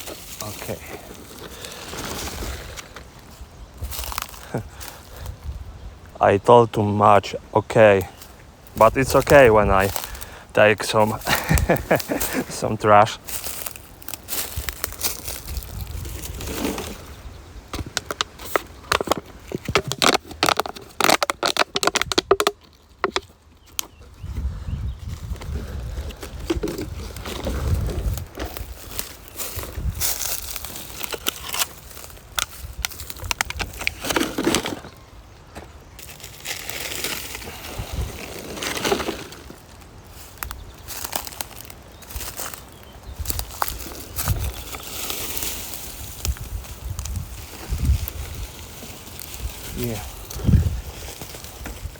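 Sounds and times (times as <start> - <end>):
plastic litter crackling: 17.7 - 23.2, 25.9 - 35.1, 36.0 - 51.9.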